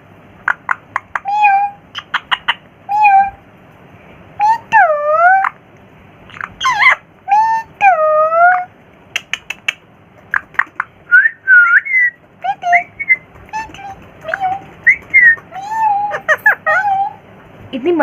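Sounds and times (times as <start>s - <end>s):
parrot whistling and chattering: 0.4s - 3.4s, 4.4s - 5.6s, 6.3s - 17.2s
parrot sharp clicks: 9.1s - 10.9s.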